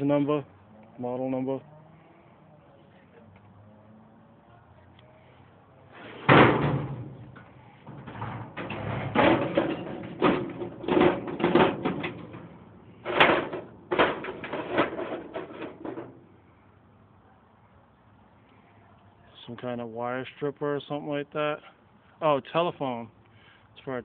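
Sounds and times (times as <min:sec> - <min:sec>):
metal tools clanking and rattling: 0:06.3 - 0:16.2.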